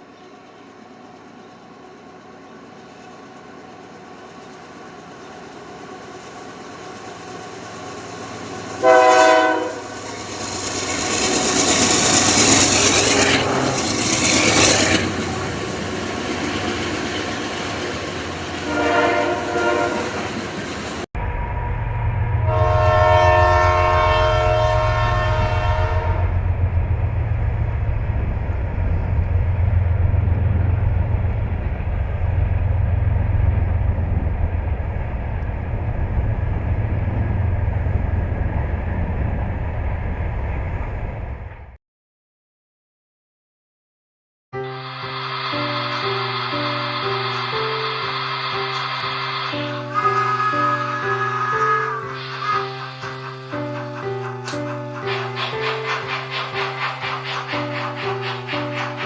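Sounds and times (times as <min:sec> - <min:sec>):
train rumbling: 0:00.0 - 0:41.8, 0:44.6 - 0:59.0
train horn blasts: 0:08.8 - 0:10.1, 0:18.6 - 0:20.4, 0:22.4 - 0:26.5, 0:49.5 - 0:53.1
loud rushing noise: 0:44.7 - 0:50.6, 0:52.0 - 0:59.0.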